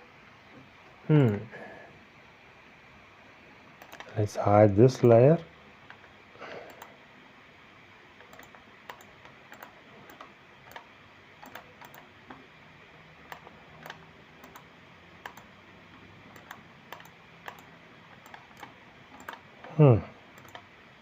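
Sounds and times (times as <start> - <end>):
mouse and keyboard clicks: 3.8 - 4.1, 8.2 - 12.4, 13.3 - 15.5, 16.3 - 19.4, 20.4 - 20.7.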